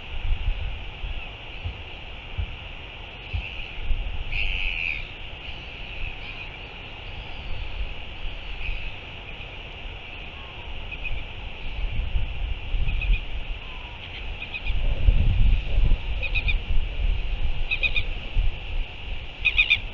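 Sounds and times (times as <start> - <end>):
wind gusting on microphone: 0.0 - 19.9
bird calls: 3.2 - 12.0, 12.8 - 14.8, 16.1 - 16.6, 17.7 - 18.2, 19.4 - 19.9.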